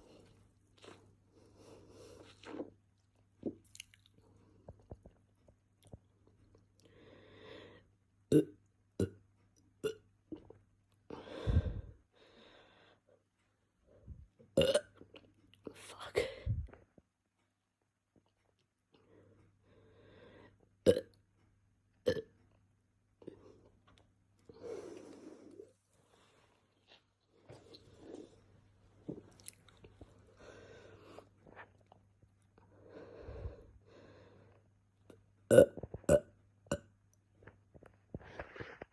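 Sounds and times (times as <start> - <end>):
person burping: 8.3 - 9.1, 14.6 - 14.9, 20.9 - 21.1, 35.5 - 36.9
person belching softly: 14.6 - 14.9.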